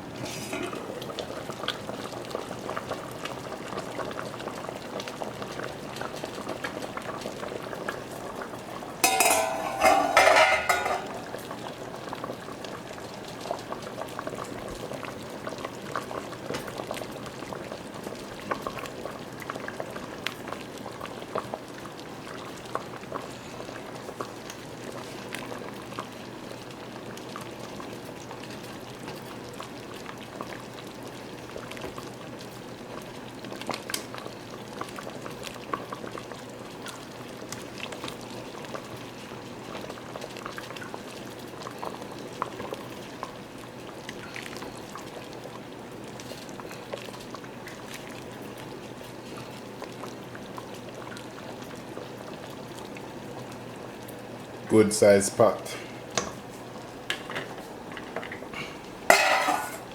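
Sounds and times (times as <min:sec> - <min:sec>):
soup bubbling in a pot: 0:00.0 - 0:59.9
metallic clatter against pot: 0:00.2 - 0:00.8, 0:09.0 - 0:11.5, 0:59.1 - 0:59.9.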